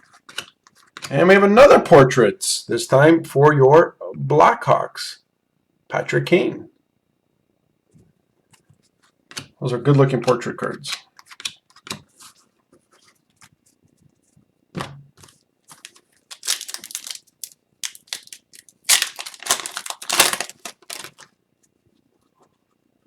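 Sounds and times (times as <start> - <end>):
cards being shuffled: 15.2 - 21.3
foil wrapper crinkling and tearing: 15.7 - 21.3.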